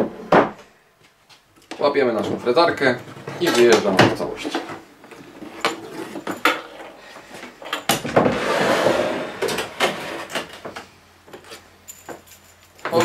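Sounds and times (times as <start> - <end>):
scraping slide: 8.2 - 10.4.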